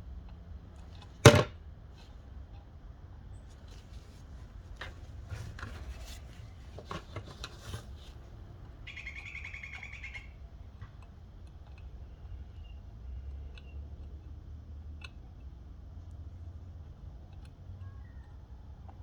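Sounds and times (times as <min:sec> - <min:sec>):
bird chirping trill: 0:08.8 - 0:10.4.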